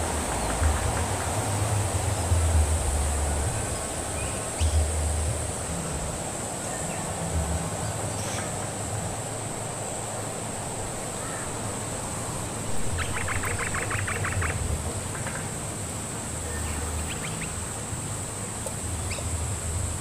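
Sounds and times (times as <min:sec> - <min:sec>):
high-pitched insect drone: 0:12.2 - 0:18.4
bird giving sharp calls: 0:12.8 - 0:15.5, 0:16.5 - 0:17.7.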